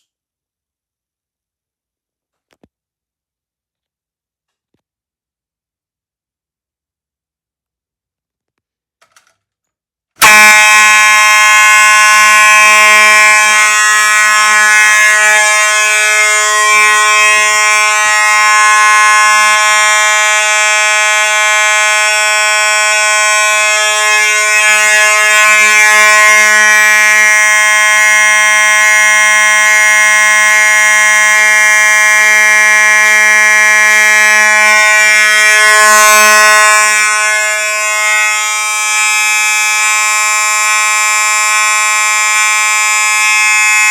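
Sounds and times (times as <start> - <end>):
fire alarm continuous tone: 10.2 - 43.9.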